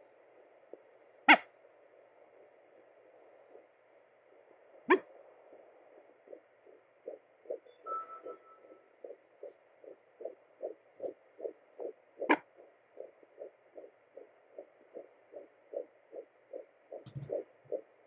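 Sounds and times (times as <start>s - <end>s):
fetal heartbeat on doppler: 0.0s - 18.0s.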